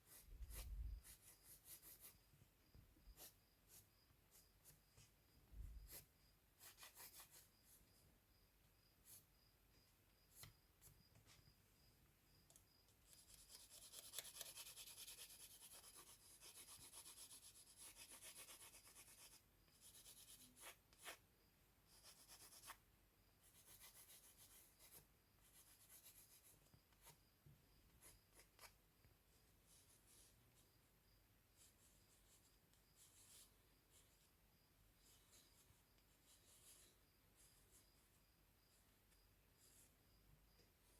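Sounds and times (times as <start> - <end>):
drawing tool scratching on paper: 0.0 - 2.2, 5.8 - 7.5, 13.1 - 21.2, 21.9 - 22.8, 23.5 - 27.1.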